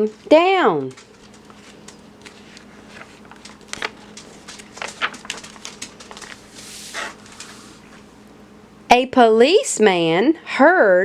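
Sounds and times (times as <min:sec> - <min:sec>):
book pages crackling and clicking: 0:00.8 - 0:08.1
page turning swish: 0:01.2 - 0:08.1.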